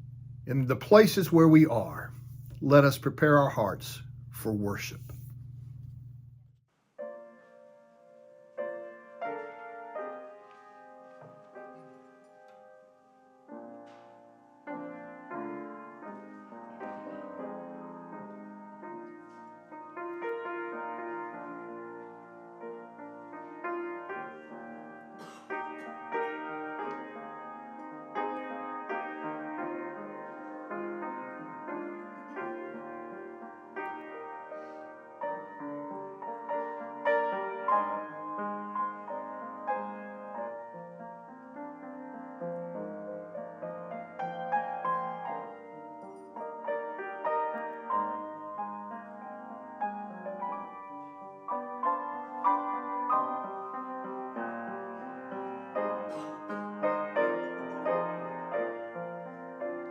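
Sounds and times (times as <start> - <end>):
slow gentle piano music: 0.0 - 4.3, 6.6 - 59.9.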